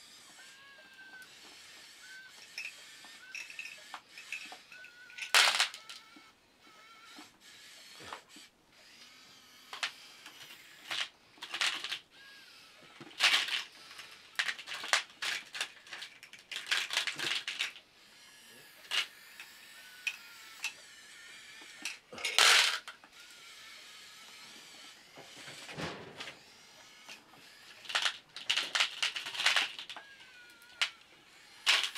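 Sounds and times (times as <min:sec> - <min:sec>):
small motor whine: 0:00.0 - 0:31.9
plastic clicks and clatters: 0:02.2 - 0:06.3, 0:09.7 - 0:12.1, 0:12.8 - 0:17.8, 0:18.8 - 0:20.8, 0:21.6 - 0:23.4, 0:25.2 - 0:31.9.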